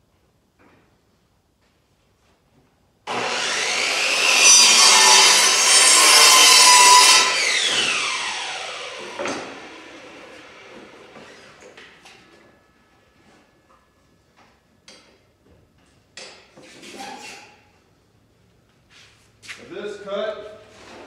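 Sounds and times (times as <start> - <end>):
saw blade winding down whine: 3.1 - 11.7
electric saw cutting wood: 3.1 - 11.9.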